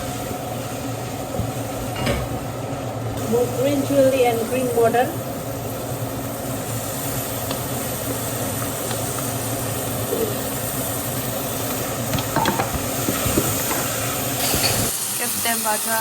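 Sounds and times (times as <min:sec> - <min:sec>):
food sizzling in a pan: 0:00.0 - 0:16.0.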